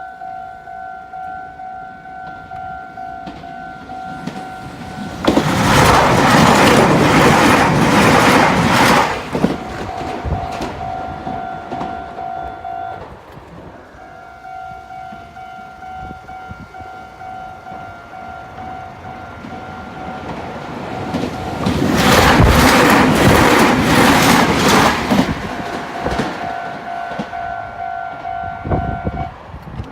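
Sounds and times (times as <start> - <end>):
level crossing warning bell ringing: 0.0 - 5.3, 9.6 - 13.1, 13.9 - 21.7, 25.6 - 29.4
electric train passing: 0.0 - 29.9
train wheels clattering over rail joints: 3.2 - 12.3, 18.5 - 27.4.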